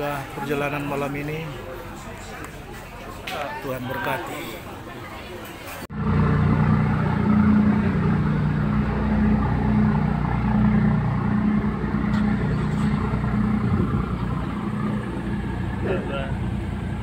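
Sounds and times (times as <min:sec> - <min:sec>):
large diesel engine running: 0:05.9 - 0:17.0.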